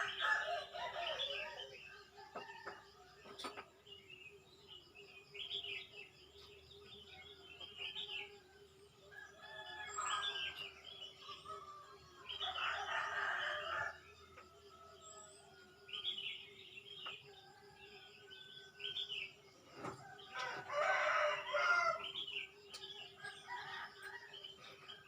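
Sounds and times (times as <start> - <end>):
small birds chirping: 0.0 - 25.0
rooster crowing: 12.4 - 14.0, 20.3 - 22.1.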